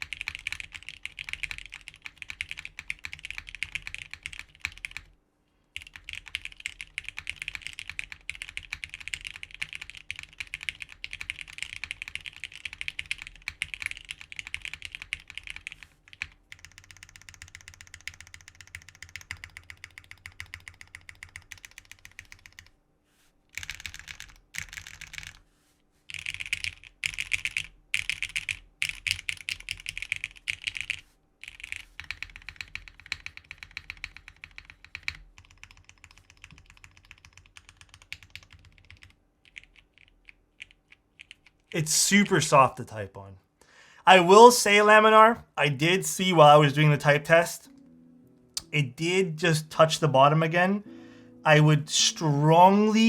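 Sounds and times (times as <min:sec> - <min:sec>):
mechanical keyboard typing: 0:00.0 - 0:05.1, 0:05.8 - 0:22.7, 0:23.5 - 0:25.4, 0:26.1 - 0:41.7.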